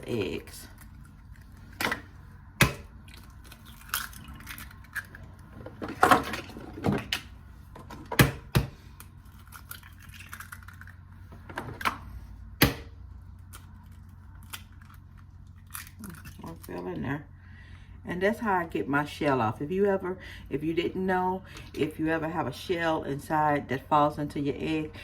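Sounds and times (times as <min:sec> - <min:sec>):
eggs cracking on a bowl rim: 0:02.6 - 0:05.4, 0:09.0 - 0:11.0.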